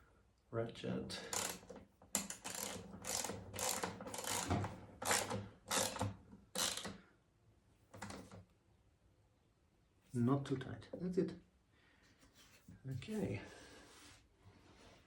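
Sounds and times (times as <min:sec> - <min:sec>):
ratchet wrench clicking: 0:01.3 - 0:07.0.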